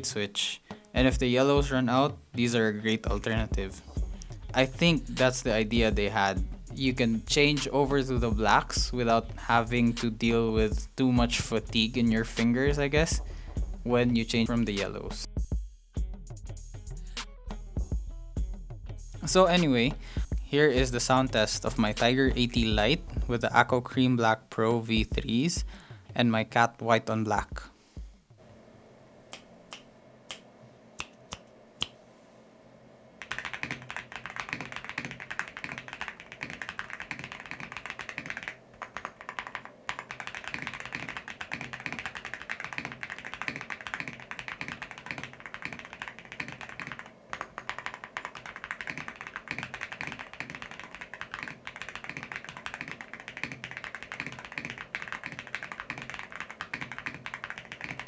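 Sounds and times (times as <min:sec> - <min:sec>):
mechanical keyboard typing: 0:33.2 - 0:58.0.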